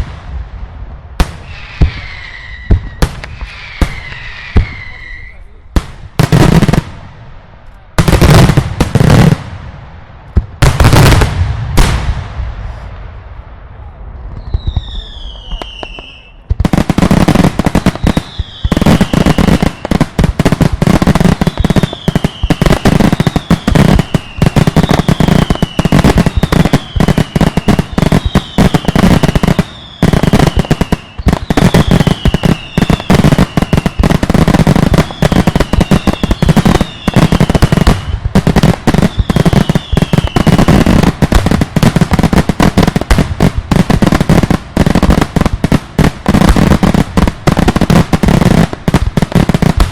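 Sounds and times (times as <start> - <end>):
firework bangs: 0.0 - 49.9
falling firework whistle: 1.4 - 5.6, 13.8 - 16.5, 17.8 - 20.0, 21.2 - 38.3, 39.0 - 41.0.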